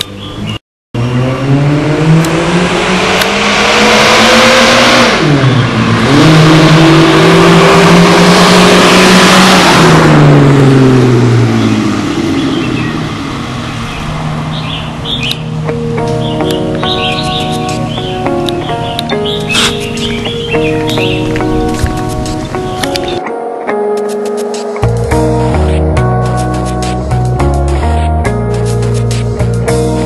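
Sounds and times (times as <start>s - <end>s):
car engine accelerating hard: 1.0s - 17.2s.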